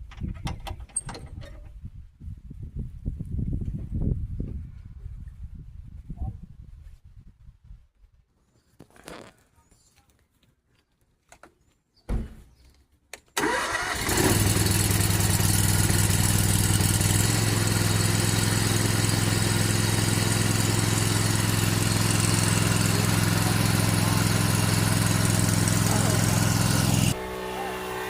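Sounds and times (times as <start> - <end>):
electric pump humming: 13.4 - 28.0.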